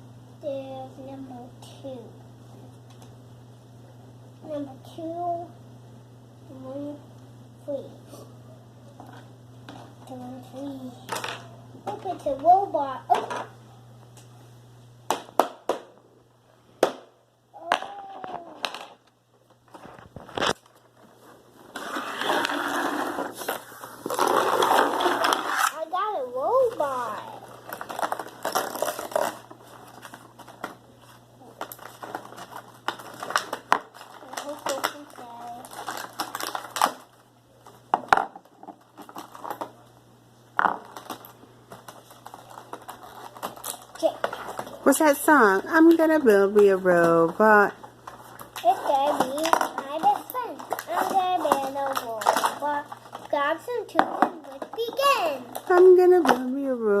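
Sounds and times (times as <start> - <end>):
toy wrapper crumpling and tearing: 22.2 - 25.8, 26.6 - 30.2, 31.6 - 37.2, 41.9 - 44.8, 48.4 - 53.4.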